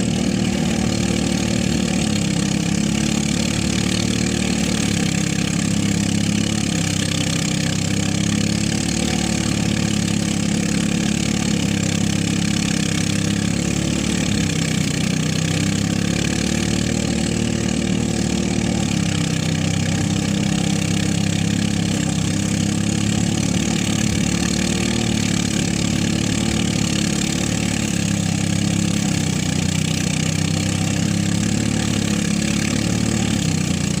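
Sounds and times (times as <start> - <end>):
threshing machine engine running: 0.0 - 34.0.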